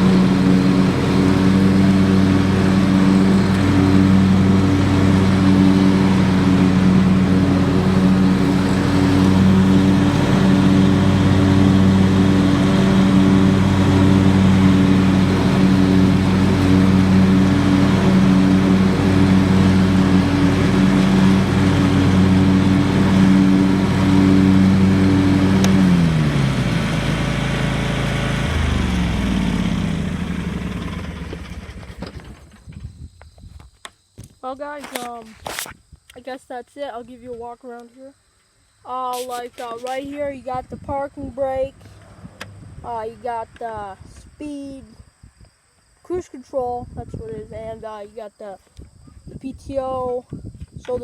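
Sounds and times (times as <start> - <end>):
lawn tractor engine running: 0.0 - 32.7, 38.9 - 43.8.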